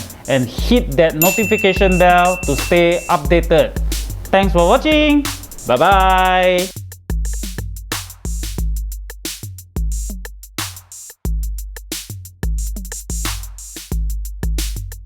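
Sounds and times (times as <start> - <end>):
electronic drum machine music: 0.0 - 7.7.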